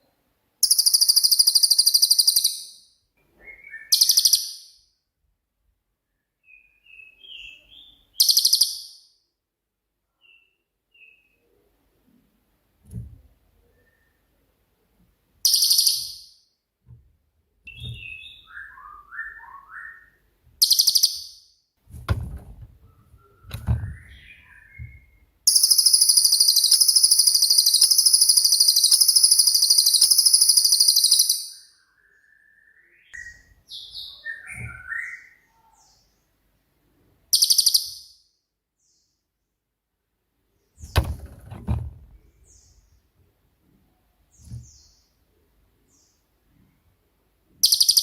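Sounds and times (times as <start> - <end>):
low thumps: 21.9 - 25.2, 40.8 - 42.2.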